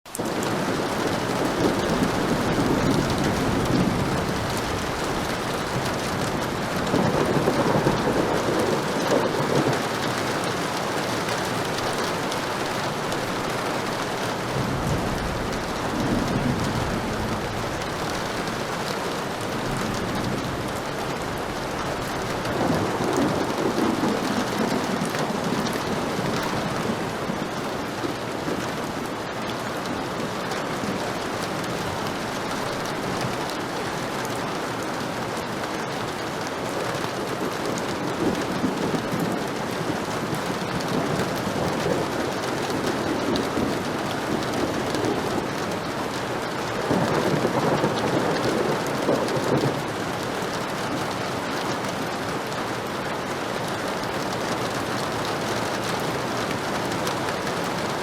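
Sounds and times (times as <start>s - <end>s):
heavy rain: 0.0s - 58.0s
thunder rolling: 0.2s - 28.8s, 37.3s - 50.3s.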